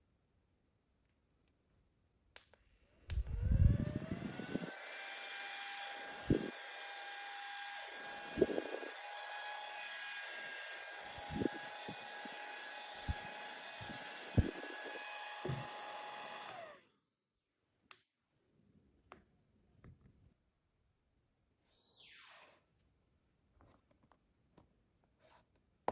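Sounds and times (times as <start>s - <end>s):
handheld fan whine: 2.9s - 16.8s.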